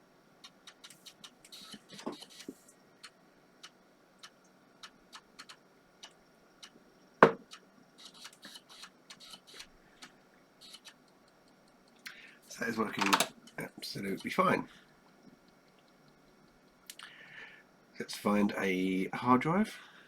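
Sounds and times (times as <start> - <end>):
sharp knock: 7.2 - 7.4
floppy drive rattling seeks: 12.5 - 14.7
floppy drive head clicks: 12.9 - 13.4.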